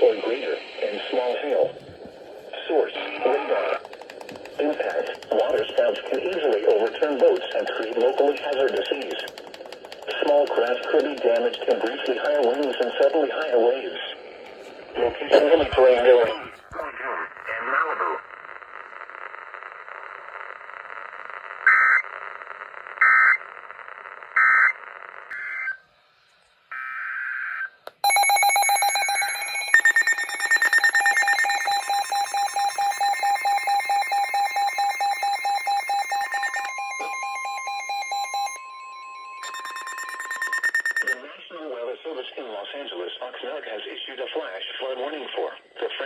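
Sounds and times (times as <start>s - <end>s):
radio static hissing: 0.0s - 25.3s
loud data bursts: 28.0s - 41.2s
pulsing electronic alarm tone: 28.0s - 41.2s
steady electronic tones: 28.0s - 41.2s.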